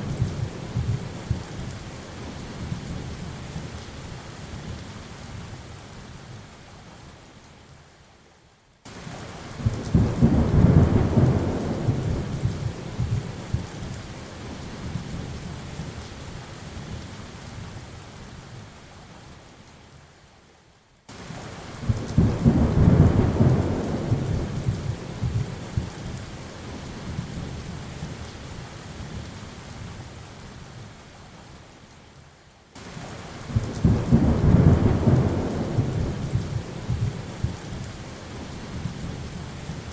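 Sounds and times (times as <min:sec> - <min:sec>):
steady rain: 0:00.0 - 0:39.9
thunder rumbling: 0:21.8 - 0:26.0, 0:33.4 - 0:37.6.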